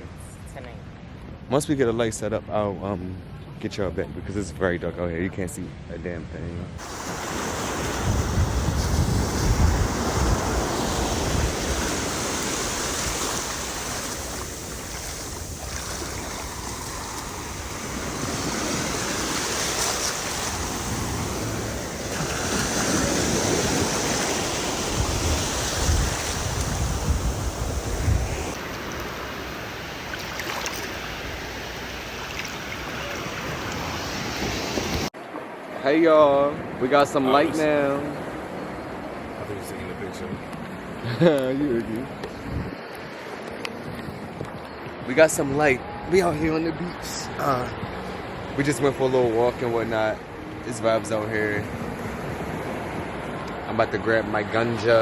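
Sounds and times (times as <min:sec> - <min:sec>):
wind rumbling on microphone: 0:06.6 - 0:35.1, 0:38.3 - 0:46.6
ocean surf breaking on beach: 0:06.8 - 0:41.3, 0:45.8 - 0:55.0.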